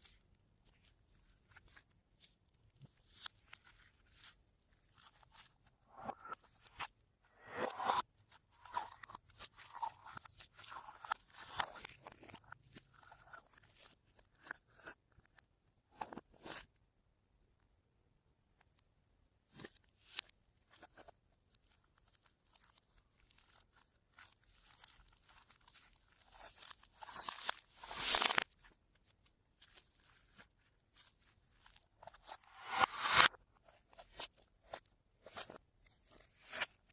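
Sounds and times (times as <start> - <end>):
slime crackling and popping: 8.6 - 15.0, 20.6 - 29.0.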